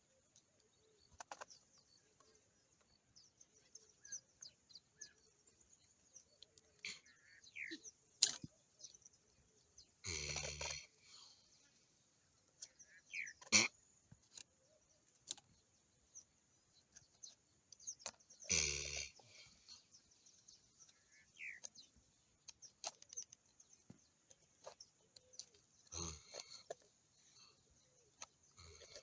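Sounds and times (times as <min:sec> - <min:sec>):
falling bird chirps: 0:06.2 - 0:09.2, 0:12.6 - 0:29.0.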